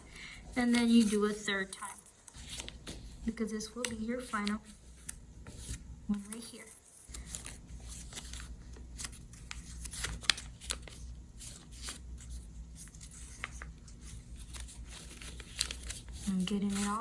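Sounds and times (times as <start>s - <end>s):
paper being folded and creased: 0.6s - 17.0s.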